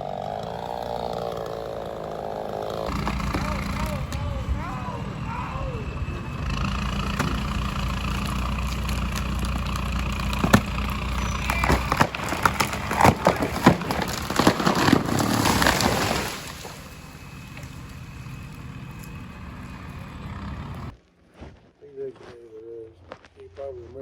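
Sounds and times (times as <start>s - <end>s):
tree cracking and crashing down: 0.0s - 4.8s, 6.5s - 20.9s
engines running: 0.0s - 21.0s.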